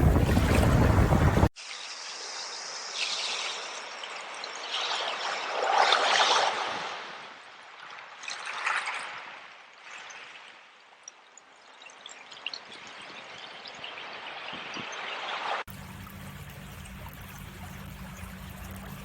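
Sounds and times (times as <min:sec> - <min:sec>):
surf and wind rushing: 0:00.0 - 0:01.5
stream trickling and splashing: 0:00.0 - 0:19.0.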